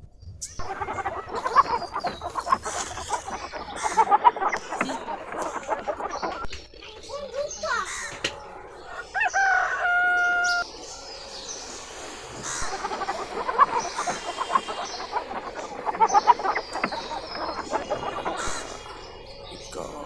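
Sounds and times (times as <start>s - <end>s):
chickens clucking: 0.4s - 20.0s
rooster crowing: 8.8s - 10.7s.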